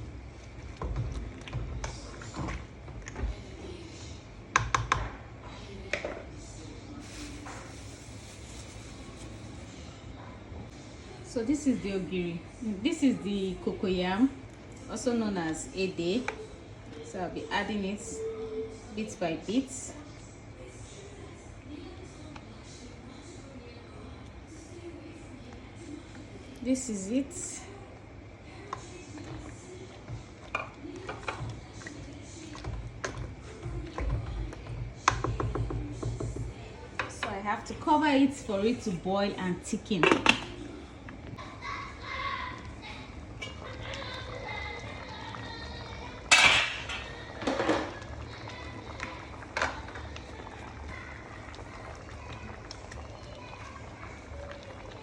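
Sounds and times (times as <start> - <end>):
cookware clattering: 46.3 - 48.0.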